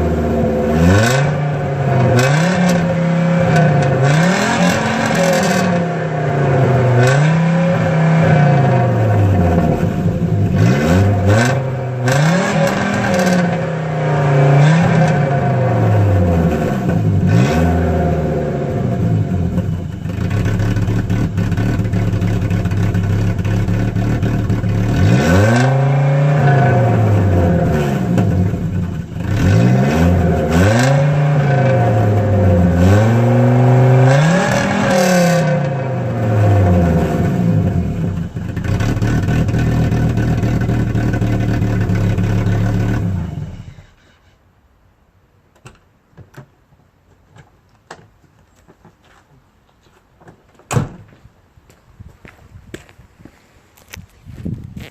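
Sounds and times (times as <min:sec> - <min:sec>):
car engine revving: 0:00.0 - 0:43.9
car engine idling: 0:18.4 - 0:25.1, 0:26.8 - 0:29.4, 0:36.0 - 0:44.0.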